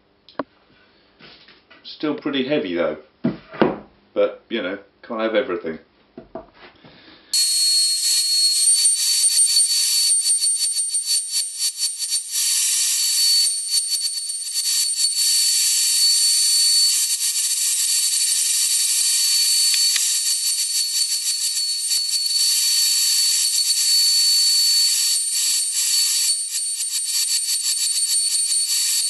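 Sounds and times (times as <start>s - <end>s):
router bit whining and cutting wood: 15.2s - 26.3s.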